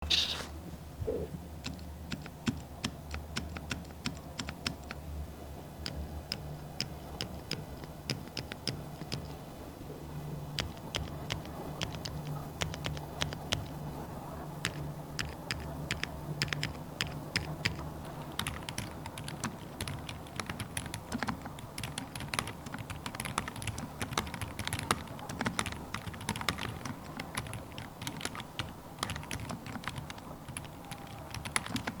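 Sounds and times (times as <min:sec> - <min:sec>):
mechanical keyboard typing: 0:01.6 - 0:05.0, 0:05.8 - 0:09.4, 0:10.5 - 0:13.9, 0:14.6 - 0:32.0.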